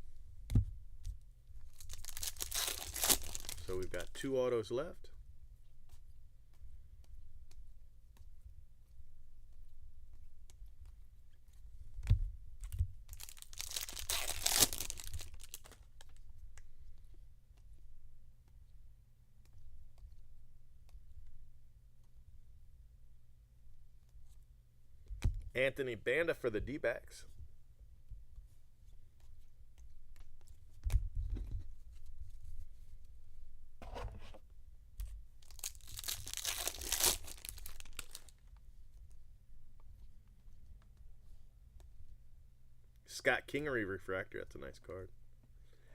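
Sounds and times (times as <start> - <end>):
foil wrapper tearing and crinkling: 1.7 - 4.0, 13.1 - 15.8, 35.4 - 38.3.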